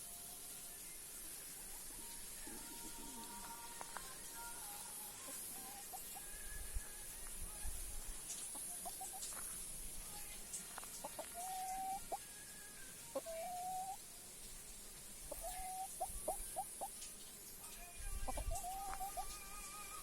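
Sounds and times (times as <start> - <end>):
chickens clucking: 1.5 - 4.3, 5.0 - 12.4, 13.0 - 17.6, 18.2 - 20.0
faint higher bird calls: 10.9 - 14.0, 15.2 - 17.0, 18.3 - 20.0.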